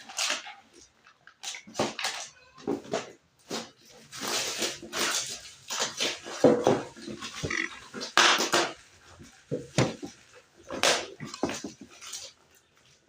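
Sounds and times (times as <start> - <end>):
packaging rustling and crinkling: 0.0 - 13.0.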